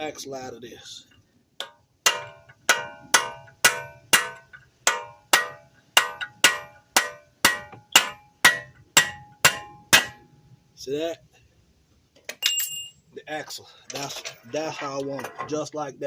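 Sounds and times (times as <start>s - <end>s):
hammer striking metal axle: 1.6s - 10.3s.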